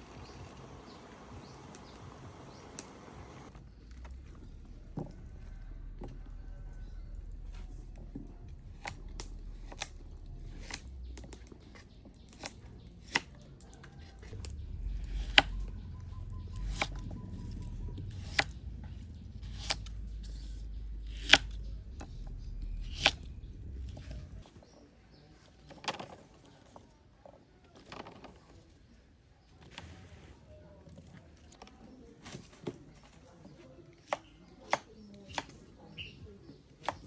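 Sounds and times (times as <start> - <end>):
low steady rumble: 0.0 - 24.5.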